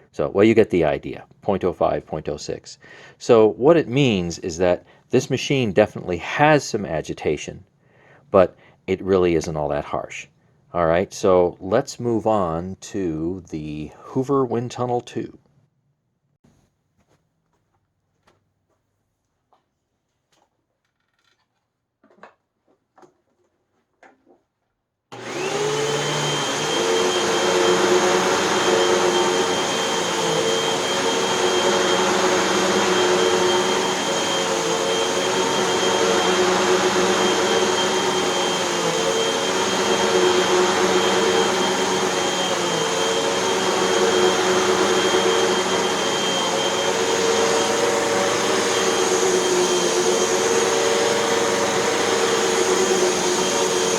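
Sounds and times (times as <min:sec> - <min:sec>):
vacuum cleaner on carpet: 0:25.1 - 0:53.9.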